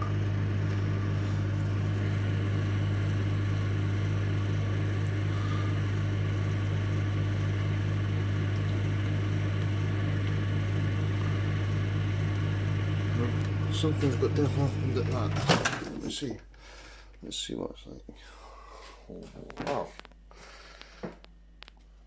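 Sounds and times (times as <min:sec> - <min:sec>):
microwave oven humming: 0:00.0 - 0:17.5.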